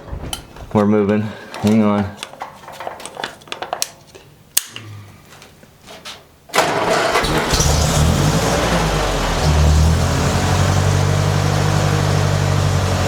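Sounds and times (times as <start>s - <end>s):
engine starter clicks: 6.5s - 8.2s
tractor engine running: 6.6s - 13.0s.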